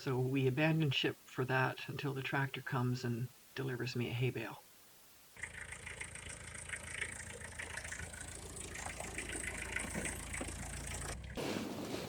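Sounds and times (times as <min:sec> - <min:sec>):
tractor engine running: 0:05.4 - 0:11.4.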